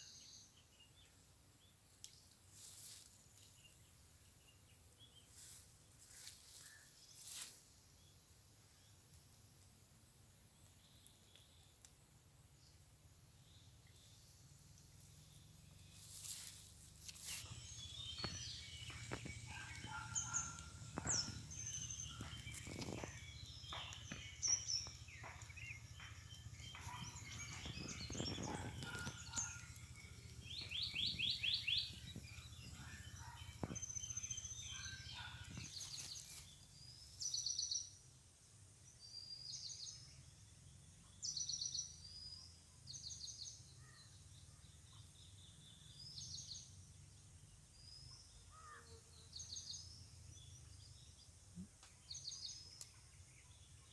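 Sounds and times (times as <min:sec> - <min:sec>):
birds chirping and trilling: 0:13.4 - 0:38.0.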